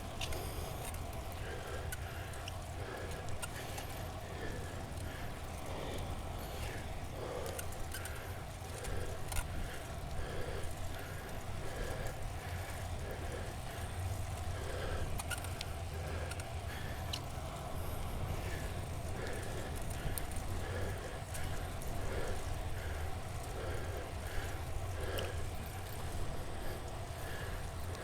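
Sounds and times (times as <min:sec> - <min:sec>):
continuous low hum: 0:00.0 - 0:28.0
person breathing hard: 0:00.2 - 0:28.0.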